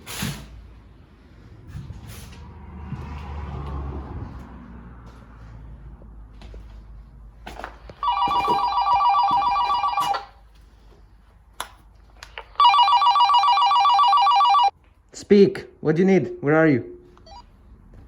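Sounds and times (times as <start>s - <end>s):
phone ringtone warbling trill: 8.0s - 10.3s, 12.6s - 14.7s.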